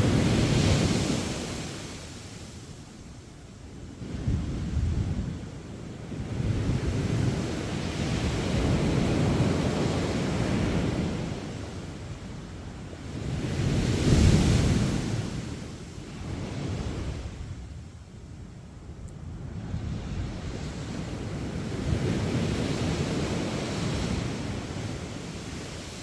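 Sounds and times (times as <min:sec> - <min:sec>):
sea waves breaking on beach: 0:00.0 - 0:02.7
wind rumbling on microphone: 0:03.6 - 0:26.0.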